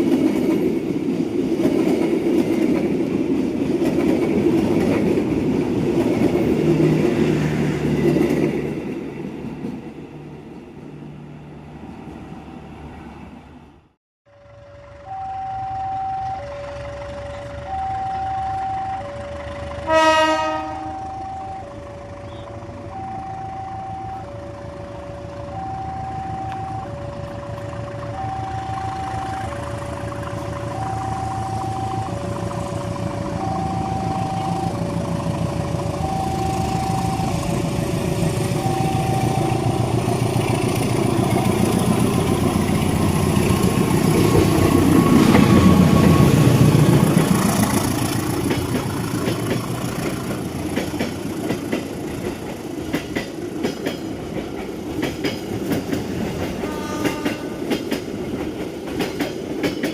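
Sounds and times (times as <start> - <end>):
train rumble: 0.0 - 59.9
level-crossing alarm two-tone warning: 14.4 - 40.4
train horn blast: 14.9 - 29.8, 56.4 - 57.8.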